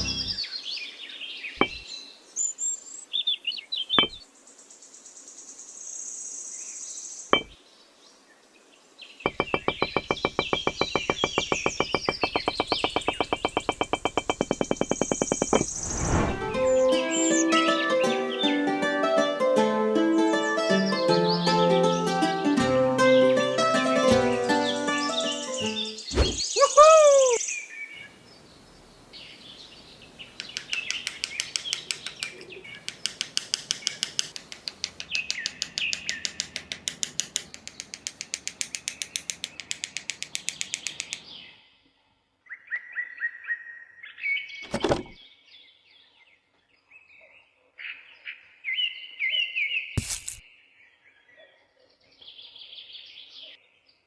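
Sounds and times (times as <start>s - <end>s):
sharp knocks: 0.0s - 0.4s, 1.6s - 1.8s, 9.3s - 15.8s, 30.4s - 41.3s
small birds chirping: 0.0s - 44.7s
fast even rasping: 9.3s - 19.6s, 30.4s - 41.3s.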